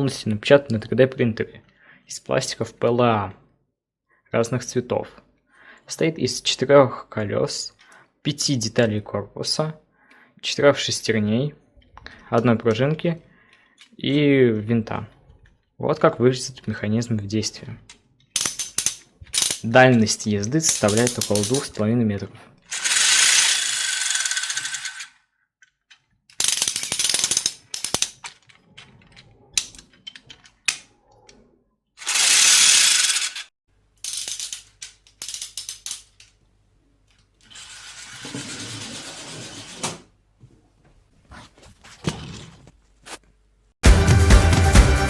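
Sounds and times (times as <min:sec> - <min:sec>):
wind-up toy car clicking: 0:18.4 - 0:19.6, 0:20.7 - 0:21.7, 0:22.7 - 0:25.2, 0:26.3 - 0:28.5, 0:32.0 - 0:36.1, 0:37.4 - 0:38.6.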